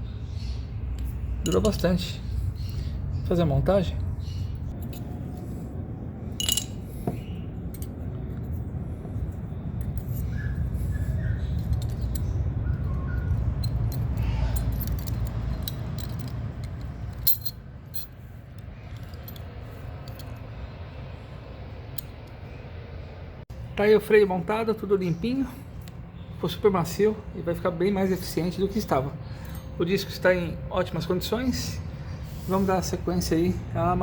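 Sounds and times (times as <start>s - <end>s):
metal tools clinking: 0.9s - 2.8s, 4.7s - 5.6s, 6.3s - 8.2s, 9.8s - 20.6s, 28.2s - 31.8s.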